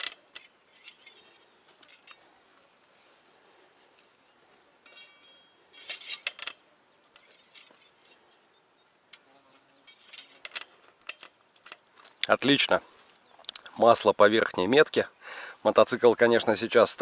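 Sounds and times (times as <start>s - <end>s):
light metallic clinks and taps: 0.0s - 2.4s, 3.9s - 12.3s.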